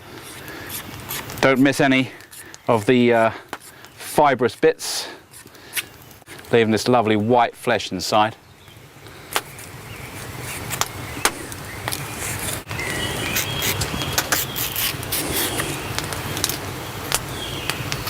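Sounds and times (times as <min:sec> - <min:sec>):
skin scraped off plant stems: 0:00.1 - 0:04.7, 0:09.3 - 0:16.6.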